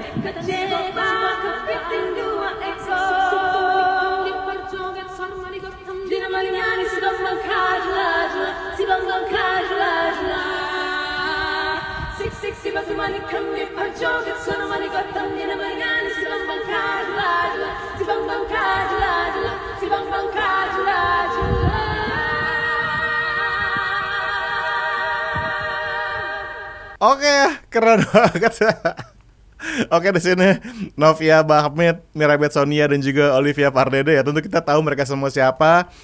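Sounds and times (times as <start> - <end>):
women singing in harmony: 0.0 - 27.0.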